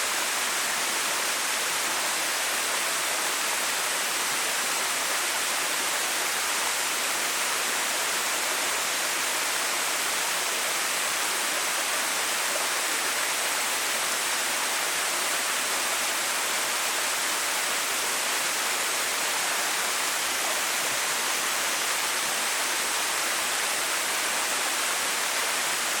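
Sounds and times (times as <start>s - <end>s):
small waterfall pouring: 0.0s - 26.0s.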